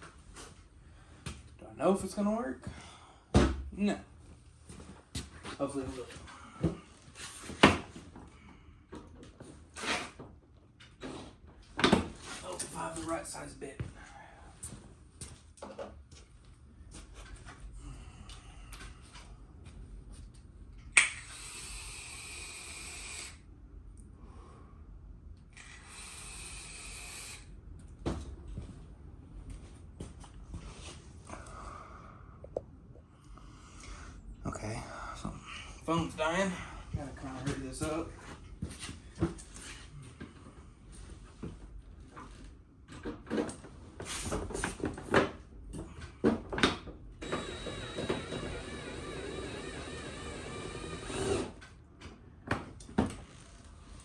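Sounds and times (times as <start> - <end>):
power drill whining: 21.2 - 23.4, 25.6 - 27.5, 47.2 - 51.6.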